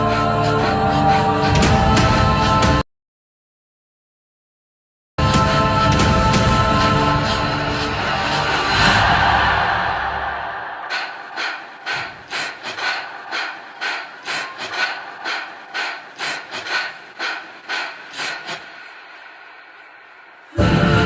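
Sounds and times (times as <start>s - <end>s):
music: 0.0s - 2.8s, 5.2s - 9.7s, 20.6s - 21.0s
rapid gasping breaths: 0.0s - 2.8s, 5.4s - 21.0s.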